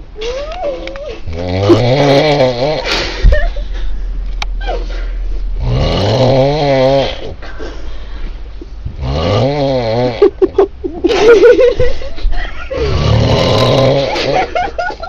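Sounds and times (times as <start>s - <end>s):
person snoring loudly: 1.3s - 3.0s, 5.6s - 7.3s, 9.0s - 10.4s, 12.8s - 14.5s.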